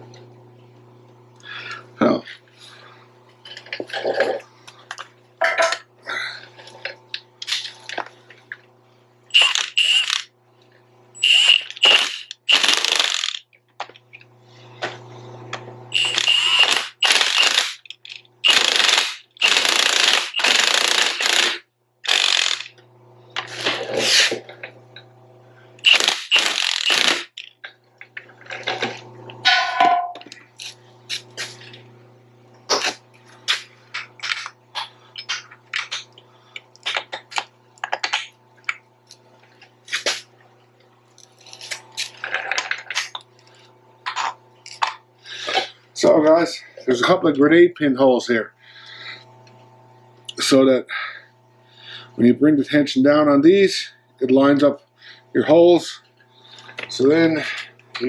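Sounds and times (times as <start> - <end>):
power tool rattling bursts: 9.3 - 10.3, 11.2 - 13.4, 15.9 - 22.8, 25.8 - 27.4.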